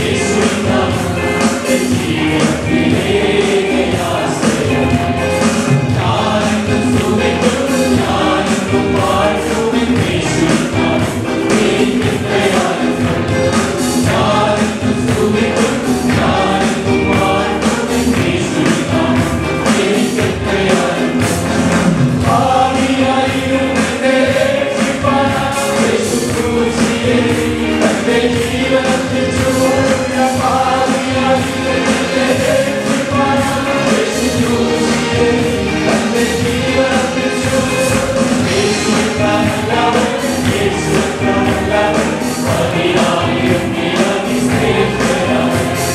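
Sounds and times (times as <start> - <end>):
congregation singing: 0.0 - 45.9
instrumental accompaniment with beat: 0.0 - 45.9.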